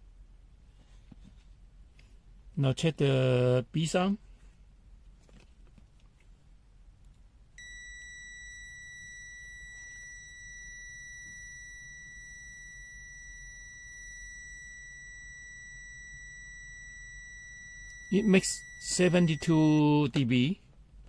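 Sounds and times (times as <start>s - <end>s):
multimeter continuous high beep: 7.6s - 20.6s.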